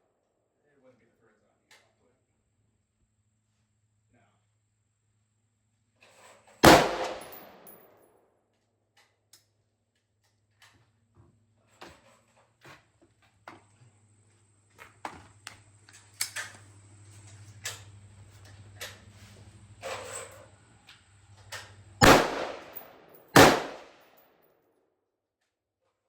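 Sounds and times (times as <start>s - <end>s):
distant gunfire cracks: 6.6s - 7.8s, 22.0s - 24.0s
rifle shot echo: 6.6s - 7.8s, 22.0s - 24.0s.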